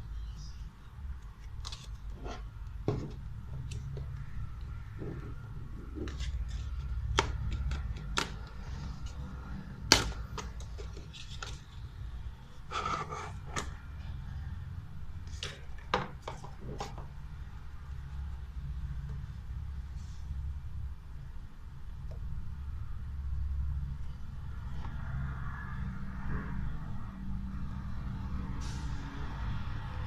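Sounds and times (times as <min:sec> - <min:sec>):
clicks taps and rustles of packaging: 0:07.1 - 0:08.6.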